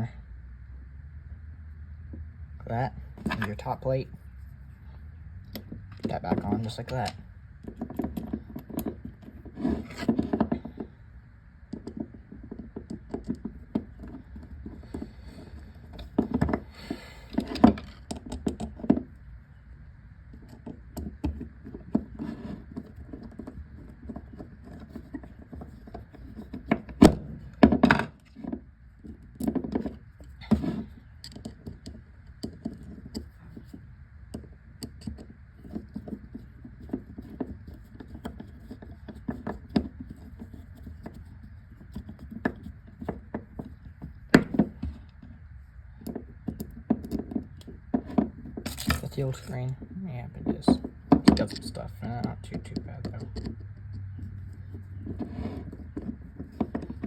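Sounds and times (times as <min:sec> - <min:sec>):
faint steady hum: 0:00.0 - 0:57.0
metal parts clicking and tapping: 0:46.0 - 0:49.5, 0:50.6 - 0:55.3.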